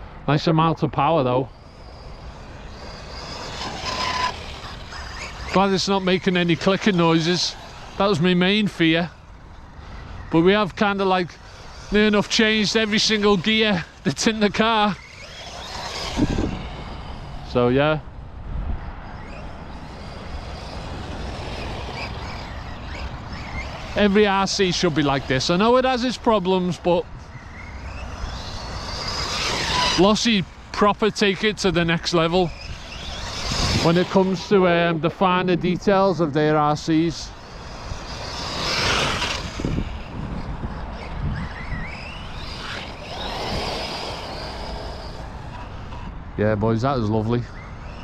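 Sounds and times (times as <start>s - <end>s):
electric motor whine: 1.0s - 48.0s
low drivetrain rumble: 1.2s - 48.0s
rush of noise: 1.4s - 35.6s.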